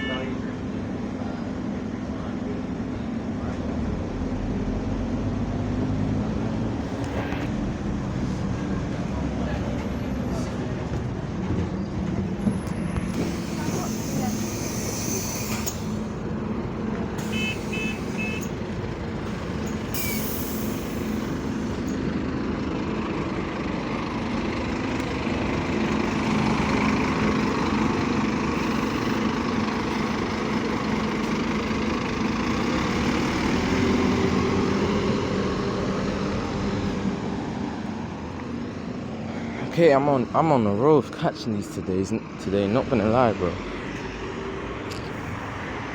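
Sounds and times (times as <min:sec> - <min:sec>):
bus engine running: 0:00.0 - 0:45.9
hiss of air: 0:19.9 - 0:21.3.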